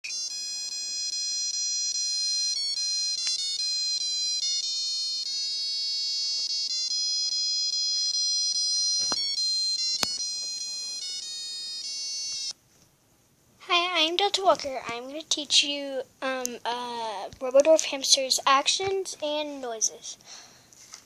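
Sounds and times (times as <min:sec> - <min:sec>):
electronic ringtone melody: 0:00.0 - 0:12.6.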